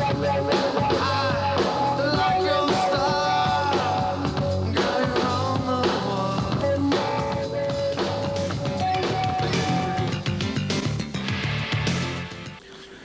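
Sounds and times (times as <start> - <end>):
person singing: 0.0 - 10.2
rock band drums and guitars: 0.0 - 12.6.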